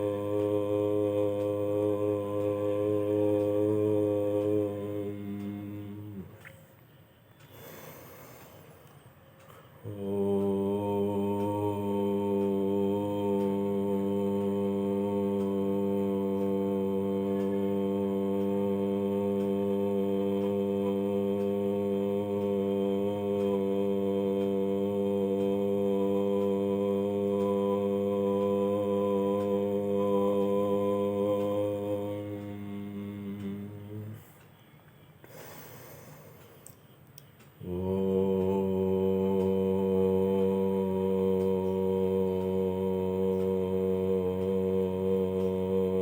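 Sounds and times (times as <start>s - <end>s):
person chanting a long note: 0.0s - 6.5s, 9.8s - 34.4s, 37.6s - 46.0s.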